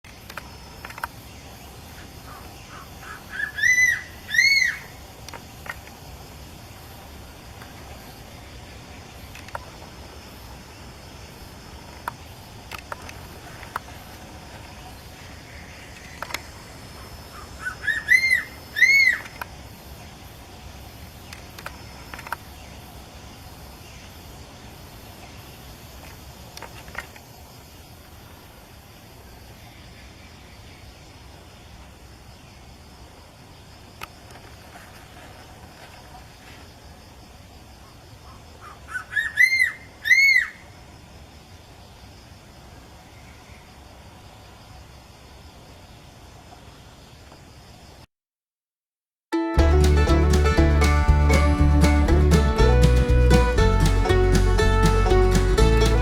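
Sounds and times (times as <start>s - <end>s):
eagle whistled calls: 3.3s - 4.9s
steady hiss: 4.1s - 17.6s, 18.4s - 37.8s.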